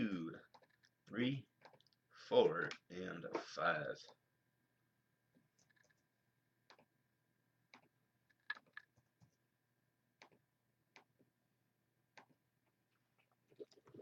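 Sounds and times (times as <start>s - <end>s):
mouse and keyboard clicks: 6.7s - 6.9s, 7.7s - 9.0s.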